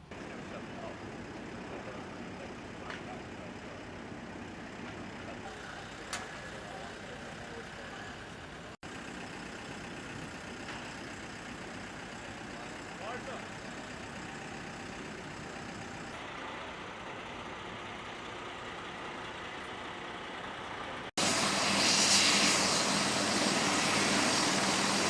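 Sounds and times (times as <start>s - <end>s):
heavy vehicle engine running: 0.0s - 25.0s.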